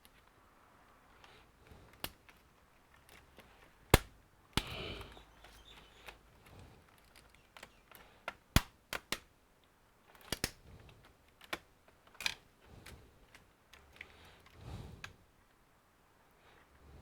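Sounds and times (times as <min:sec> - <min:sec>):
plastic clicks of laptop handled: 0:01.1 - 0:14.5.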